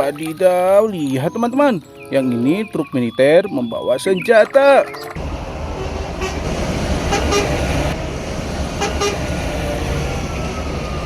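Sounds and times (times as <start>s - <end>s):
truck engine rumbling: 5.0s - 11.0s
short horn toots: 5.8s - 8.0s, 8.8s - 9.3s.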